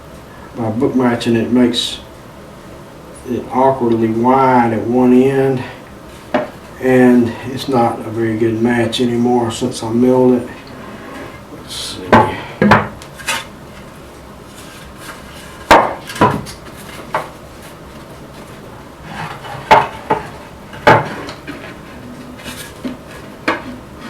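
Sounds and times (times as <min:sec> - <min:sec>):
wooden slabs knocking: 0:12.1 - 0:13.0, 0:15.7 - 0:16.5, 0:19.1 - 0:21.8.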